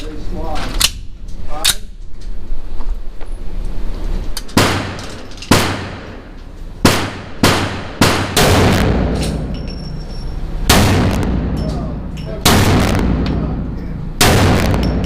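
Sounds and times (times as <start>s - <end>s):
pistol shots with echo: 4.6s - 9.6s, 10.7s - 11.6s, 12.4s - 13.6s, 14.2s - 15.0s.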